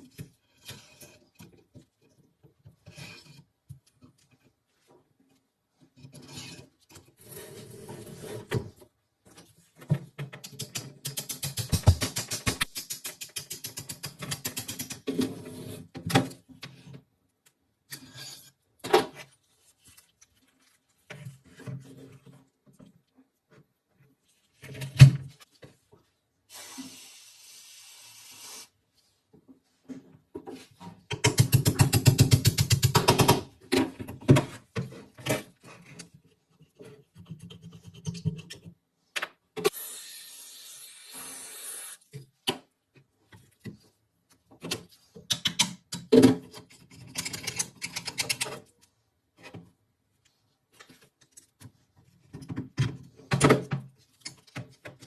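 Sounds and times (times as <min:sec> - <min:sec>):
metal parts clicking and knocking: 0:10.2 - 0:15.1, 0:45.3 - 0:48.7.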